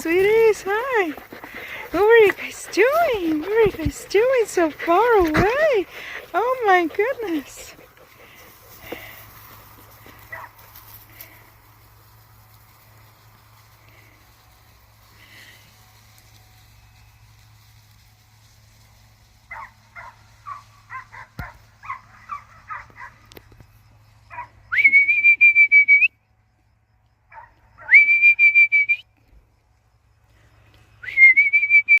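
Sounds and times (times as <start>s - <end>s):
puppies yipping: 0.0s - 9.1s.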